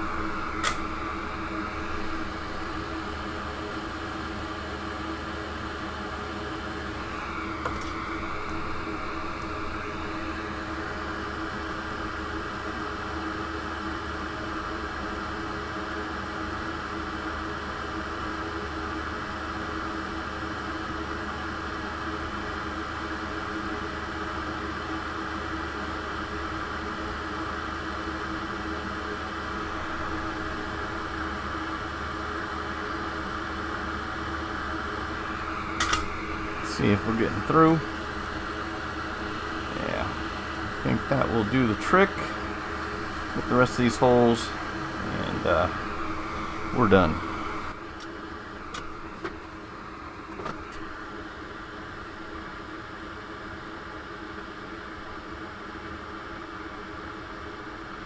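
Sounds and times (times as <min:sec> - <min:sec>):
fan whirring: 0:00.0 - 0:17.4, 0:24.8 - 0:52.6
electrical hum: 0:00.0 - 0:55.3
small click: 0:00.6 - 0:00.9.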